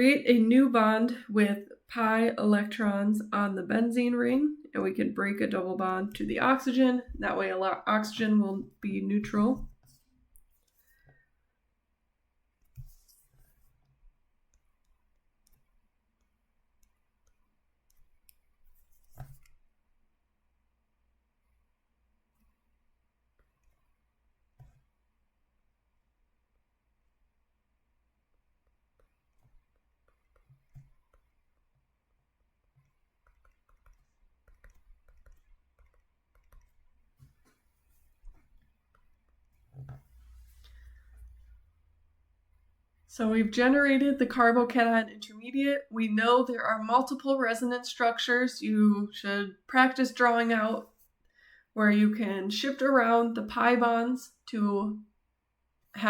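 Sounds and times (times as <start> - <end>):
faint irregular clicks and taps: 12.6 - 19.7, 23.3 - 24.9, 28.3 - 31.9, 32.6 - 40.8
pen clicks and taps: 32.8 - 36.8
low room hum: 37.8 - 45.3.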